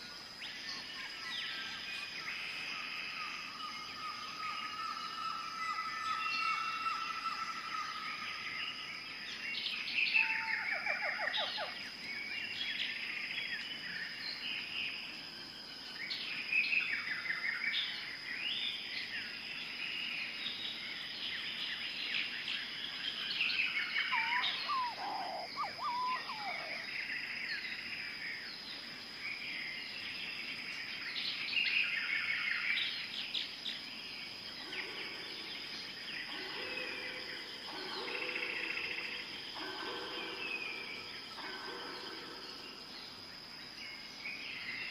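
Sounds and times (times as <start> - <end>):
birds chirping and trilling: 0.0 - 44.9
high insect whine: 0.0 - 44.9
low sweeping bird call: 23.8 - 27.0.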